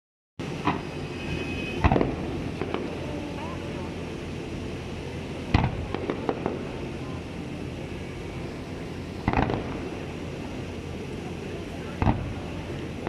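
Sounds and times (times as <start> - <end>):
fireworks bangs: 0.4 - 13.0
low background noise: 0.4 - 13.0
small firework pops: 0.6 - 0.9, 1.8 - 3.0, 5.5 - 6.7, 9.2 - 9.9, 12.0 - 12.4.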